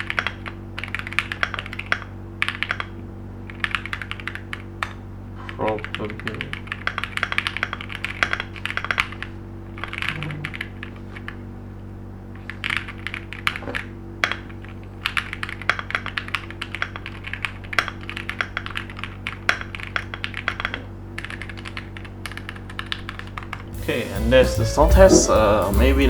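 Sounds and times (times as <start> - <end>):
mechanical keyboard typing: 0.0 - 5.0, 5.6 - 9.2, 9.8 - 10.9, 12.5 - 14.4, 15.0 - 23.6.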